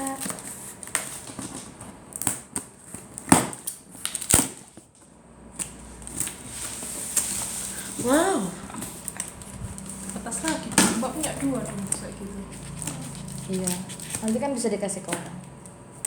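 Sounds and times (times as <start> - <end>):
sharp cardboard snaps: 0.0 - 4.9
cardboard box rustling and scraping: 6.1 - 14.5.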